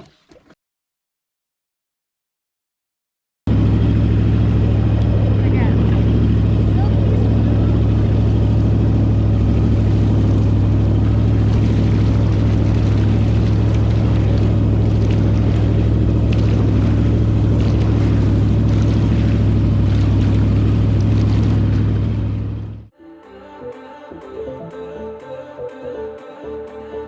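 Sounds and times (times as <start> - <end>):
boat engine running: 3.5 - 22.9
water noise: 3.5 - 22.9.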